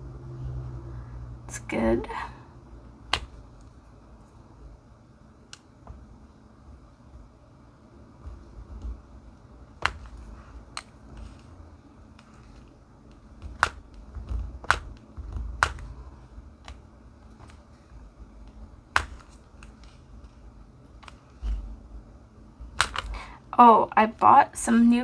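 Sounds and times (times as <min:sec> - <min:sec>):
small sharp clicks and taps: 0:03.1 - 0:03.7, 0:12.2 - 0:16.8, 0:18.5 - 0:20.0, 0:22.8 - 0:23.3
soft handling bumps: 0:05.4 - 0:07.3, 0:08.1 - 0:23.3.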